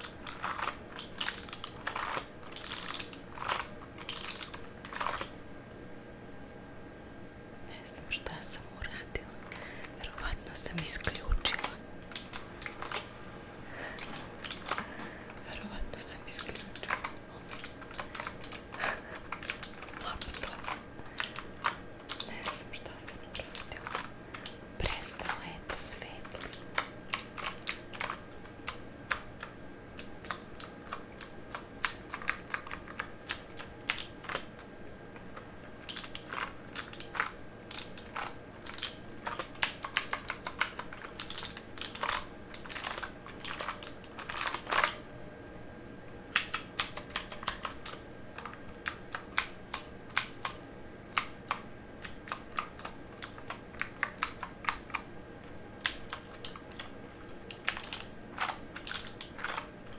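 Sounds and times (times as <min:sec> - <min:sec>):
mechanical keyboard typing: 0:00.0 - 0:05.3, 0:08.3 - 0:13.1, 0:13.8 - 0:45.0, 0:46.3 - 0:59.9.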